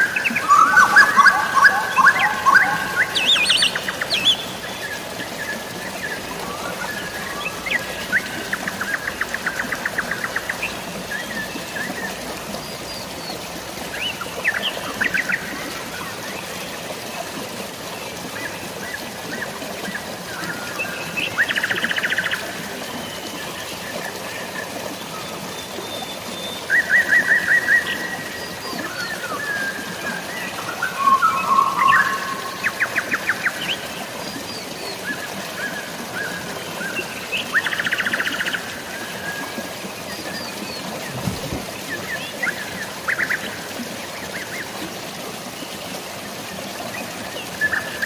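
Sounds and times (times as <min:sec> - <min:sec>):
light rain hiss: 0:00.0 - 0:48.0
running water: 0:00.0 - 0:48.0
birds chirping: 0:40.2 - 0:43.5.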